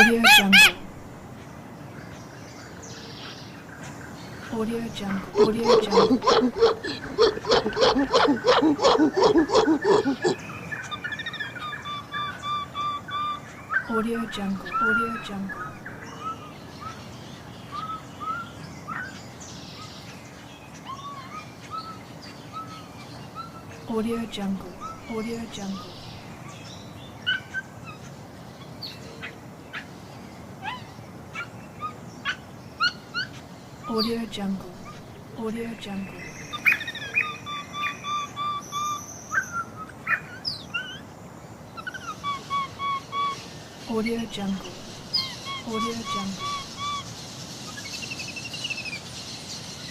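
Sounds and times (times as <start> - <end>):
bird arched call: 0.0 - 1.0, 5.1 - 17.0, 36.2 - 41.0, 41.8 - 43.6, 44.2 - 49.0
steady background hiss: 0.0 - 49.9.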